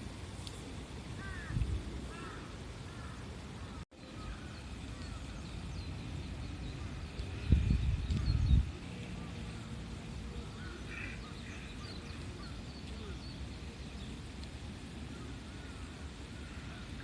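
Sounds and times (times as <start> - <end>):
small birds chirping: 1.2 - 17.0.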